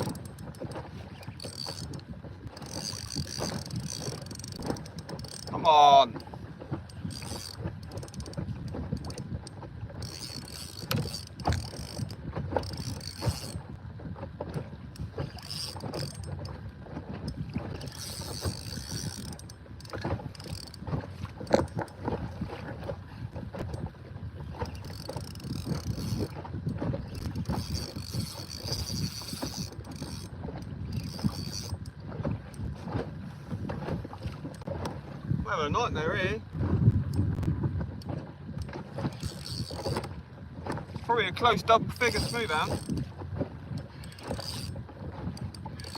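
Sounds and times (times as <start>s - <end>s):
fishing reel clicking: 0.0s - 2.0s, 2.6s - 5.6s, 6.9s - 13.6s, 15.0s - 16.5s, 17.8s - 20.8s, 24.7s - 26.4s, 27.1s - 31.9s, 39.1s - 40.1s, 41.9s - 43.0s, 43.8s - 44.8s, 45.4s - 45.9s
water sloshing against hull: 0.0s - 45.9s.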